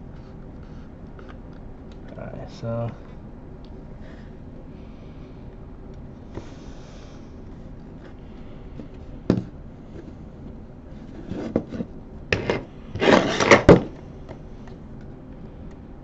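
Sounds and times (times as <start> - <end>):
knocks and rattles of microscope: 8.7 - 12.7
clattering scrape: 11.0 - 13.9.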